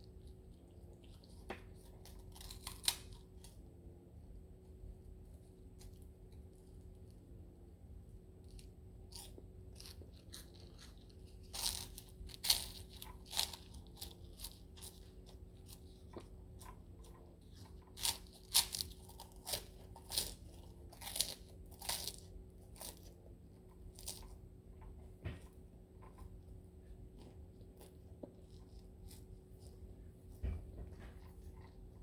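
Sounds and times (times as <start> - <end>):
electrical hum: 0.0 - 32.0
person chewing crunchily: 8.5 - 25.0, 26.0 - 30.0.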